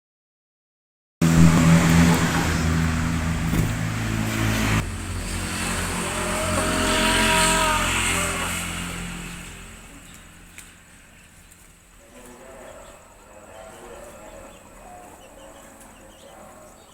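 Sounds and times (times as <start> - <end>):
rising whine: 1.2 - 10.0
vehicle engine running loudly: 1.2 - 12.0.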